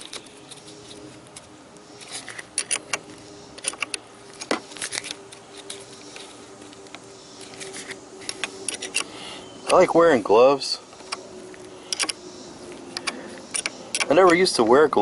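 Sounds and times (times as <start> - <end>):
wrench clicking: 13.0 - 14.4.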